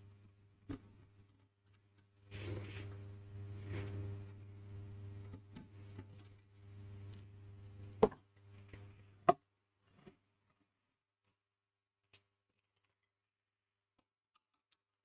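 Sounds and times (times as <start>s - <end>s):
steady low hum: 2.2s - 9.3s.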